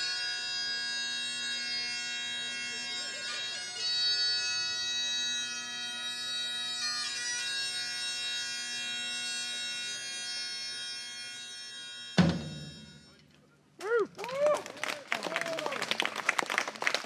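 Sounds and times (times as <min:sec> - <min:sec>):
bagpipes playing folk melody: 0:00.0 - 0:13.2.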